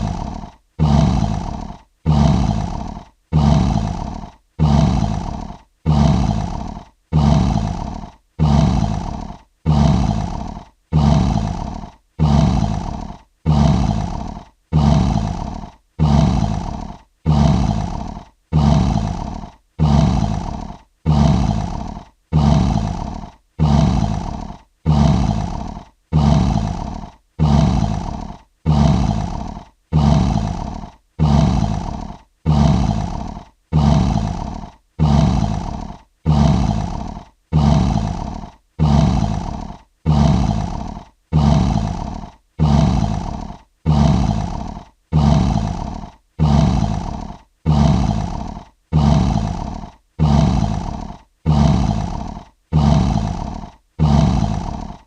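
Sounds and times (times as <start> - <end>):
lion roaring grunt: 0.0 - 55.0.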